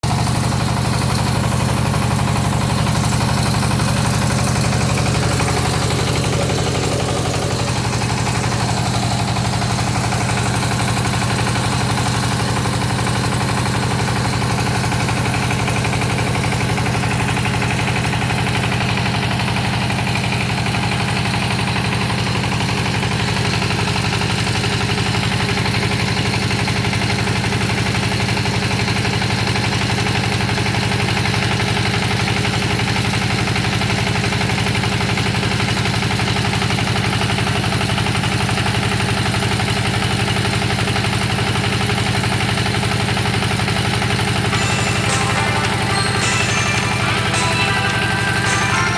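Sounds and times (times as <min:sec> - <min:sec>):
drilling rig engine running: 0:00.0 - 0:25.0, 0:41.0 - 0:48.9.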